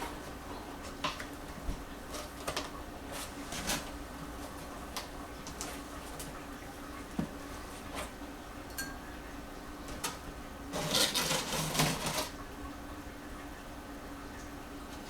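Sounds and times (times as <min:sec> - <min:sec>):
packing scraping and crinkling: 0:02.1 - 0:04.1, 0:10.8 - 0:12.4.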